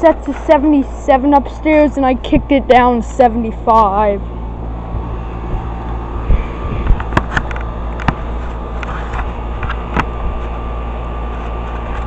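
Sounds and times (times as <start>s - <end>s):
air conditioner unit humming: 0.0s - 12.0s.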